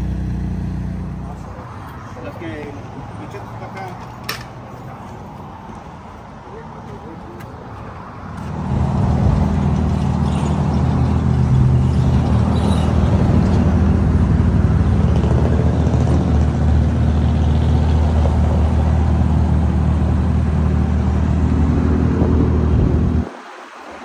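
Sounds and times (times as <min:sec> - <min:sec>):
vehicle engine running: 0:00.0 - 0:02.8, 0:08.4 - 0:23.3.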